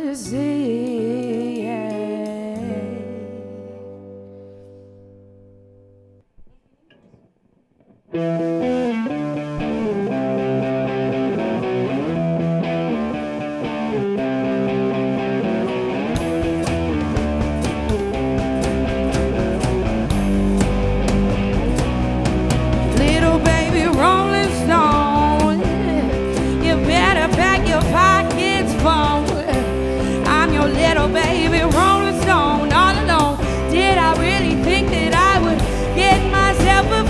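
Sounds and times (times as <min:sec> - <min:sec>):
distorted electric guitar: 0:08.1 - 0:37.0
rock band held chord: 0:15.0 - 0:37.0
heavy bass: 0:16.2 - 0:37.0.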